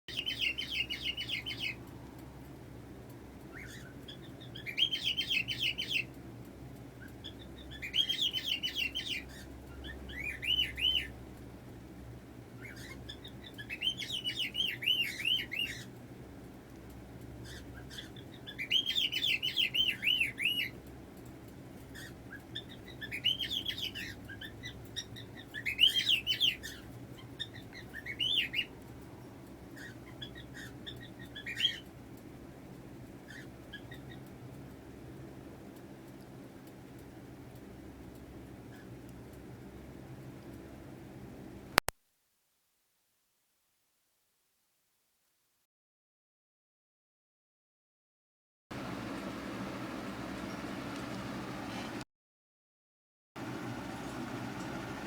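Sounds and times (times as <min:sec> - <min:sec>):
cockatiel chirping: 0:00.1 - 0:01.8, 0:03.5 - 0:06.2, 0:07.0 - 0:11.1, 0:12.6 - 0:15.9, 0:17.4 - 0:20.8, 0:21.9 - 0:28.9, 0:29.7 - 0:32.0, 0:33.2 - 0:34.3.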